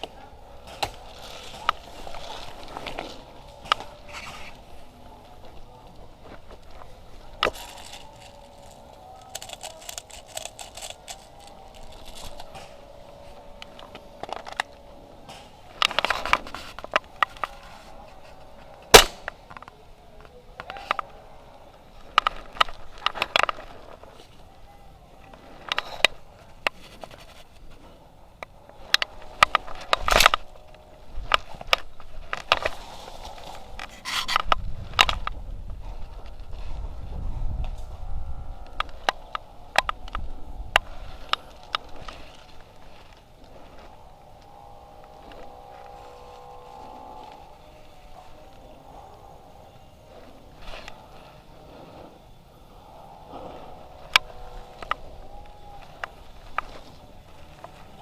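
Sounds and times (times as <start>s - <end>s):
airsoft gunshots: 18.9s - 19.3s.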